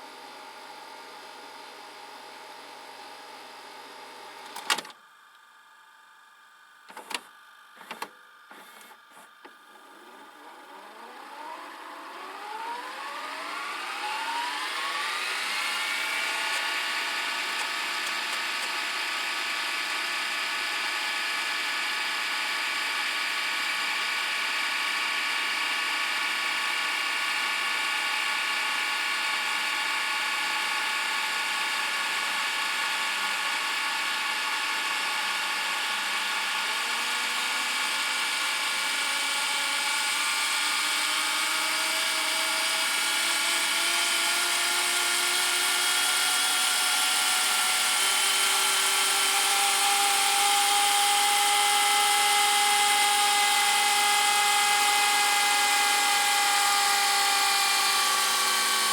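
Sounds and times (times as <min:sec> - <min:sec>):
tape rewinding motor whine: 0:07.8 - 0:20.0.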